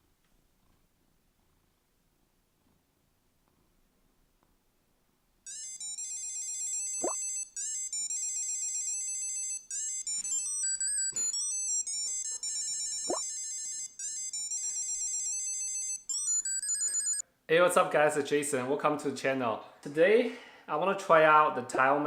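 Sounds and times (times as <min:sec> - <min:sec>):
electronic beeping melody: 0:05.5 - 0:17.2.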